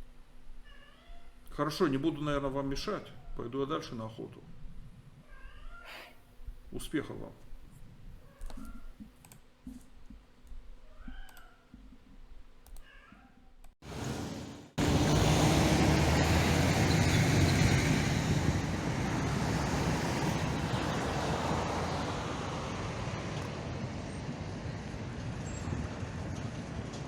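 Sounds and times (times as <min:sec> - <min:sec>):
road traffic: 0:13.8 - 0:27.0
heavy vehicle engine running: 0:13.9 - 0:27.0.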